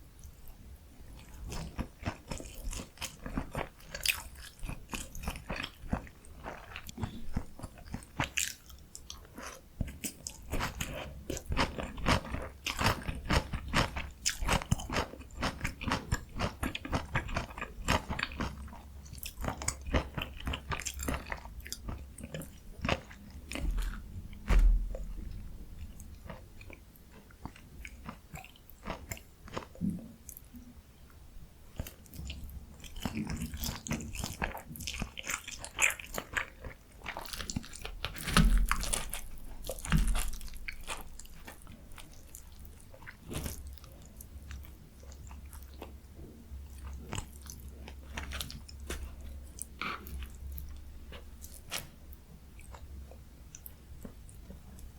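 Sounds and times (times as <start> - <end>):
crunching and chewing fried food: 0.2 - 30.6, 31.6 - 54.9
low thump: 24.4 - 25.2.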